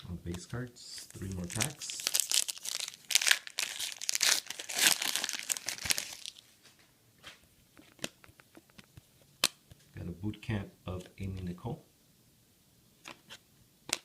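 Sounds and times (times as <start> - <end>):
wrapper tearing and crinkling: 1.0 - 6.4.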